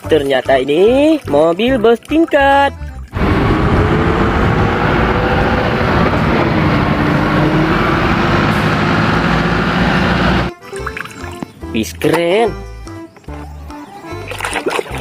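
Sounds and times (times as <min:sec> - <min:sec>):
vehicle engine rumble: 0:03.0 - 0:10.6.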